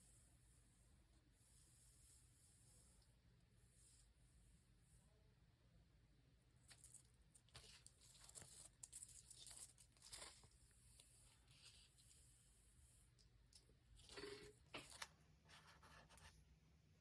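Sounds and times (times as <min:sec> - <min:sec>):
faint paper tearing and crinkling: 0:06.6 - 0:12.2.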